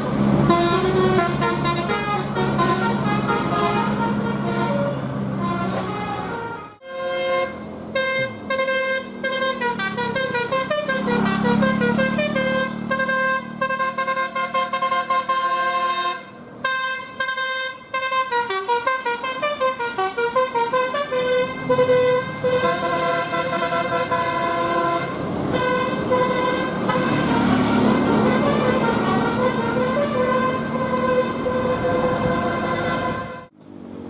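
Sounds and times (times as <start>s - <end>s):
multi-trumpet horns playing tune: 0.4s - 33.5s.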